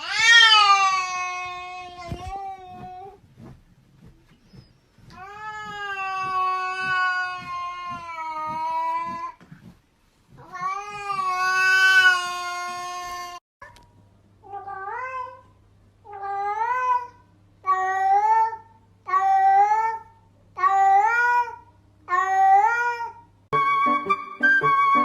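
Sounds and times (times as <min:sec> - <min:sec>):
cat meowing: 0:00.0 - 0:02.9.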